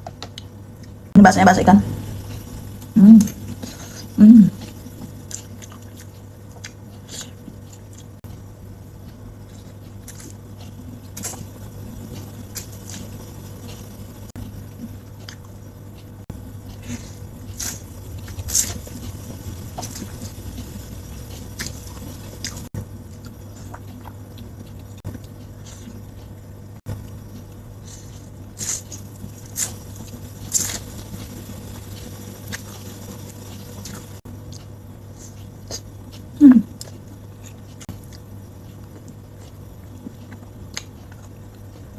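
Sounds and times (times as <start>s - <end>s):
steady low hum: 0.0s - 41.9s
chewing and slurping: 14.8s - 26.4s, 27.3s - 41.9s.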